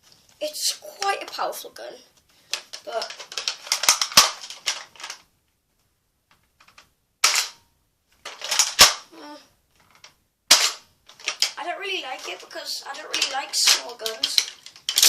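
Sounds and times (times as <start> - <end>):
toy blaster plastic clacks: 2.5 - 5.3, 8.2 - 9.0, 9.9 - 15.0
toy blaster firing snaps: 3.0 - 4.8, 8.4 - 9.1.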